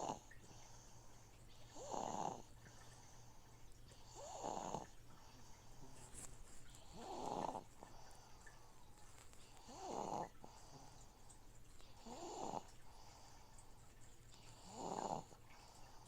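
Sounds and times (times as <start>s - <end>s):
fish tank filter hum: 0.0s - 16.0s
person snoring: 6.9s - 7.7s, 9.6s - 10.3s, 14.6s - 15.4s.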